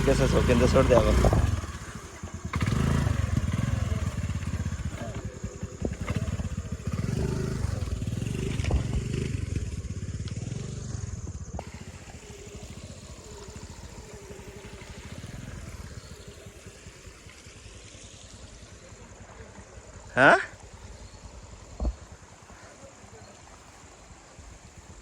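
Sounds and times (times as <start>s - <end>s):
motorcycle engine running: 0.0s - 25.0s.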